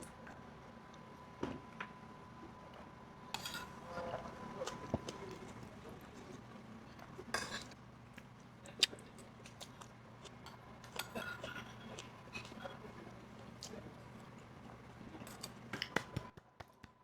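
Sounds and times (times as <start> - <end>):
spoon and chopsticks clinking dishes: 3.4 - 4.8, 7.4 - 7.7, 10.5 - 12.8, 15.2 - 16.0.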